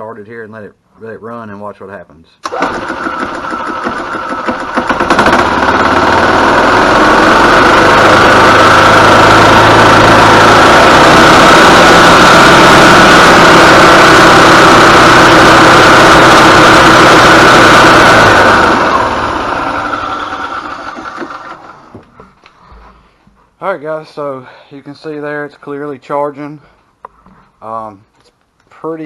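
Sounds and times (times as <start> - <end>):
golf cart engine starting and running: 2.4 - 22.2.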